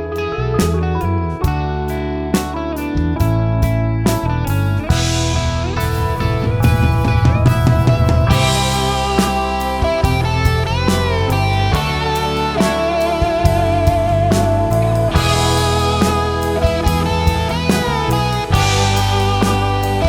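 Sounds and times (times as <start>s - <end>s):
bass guitar: 0.0s - 20.0s
lead guitar with bent notes: 0.0s - 20.0s
drum hits: 4.9s - 20.0s.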